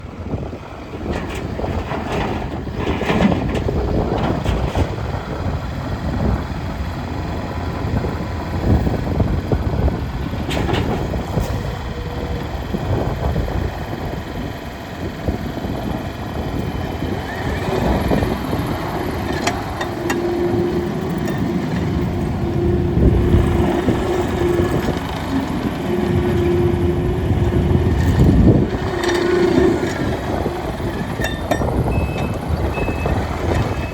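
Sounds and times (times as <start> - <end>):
diesel engine running: 0.0 - 33.9.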